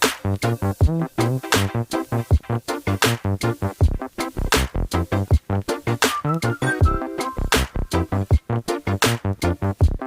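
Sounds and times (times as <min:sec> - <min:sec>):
drum machine beat: 0:00.0 - 0:10.0
choppy synth notes: 0:03.8 - 0:08.3.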